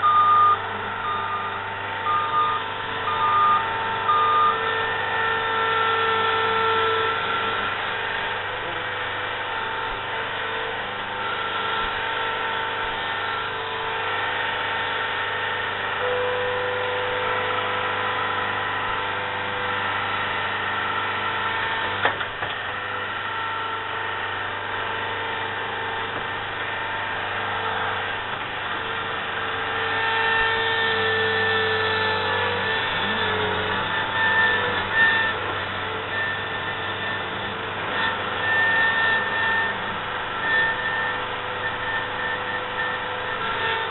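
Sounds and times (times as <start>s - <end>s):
earthmoving machine engine and hydraulics: 0.0s - 18.6s, 31.2s - 43.9s.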